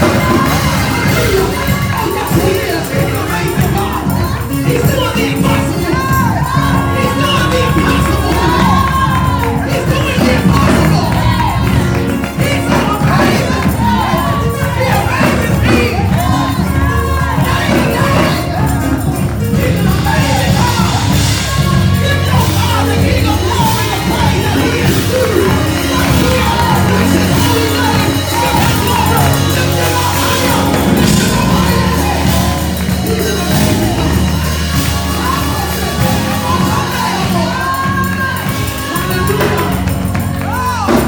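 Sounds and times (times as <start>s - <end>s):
band with bass line: 0.0s - 41.0s
congregation shouting: 0.0s - 41.0s
gospel choir singing: 0.0s - 41.0s.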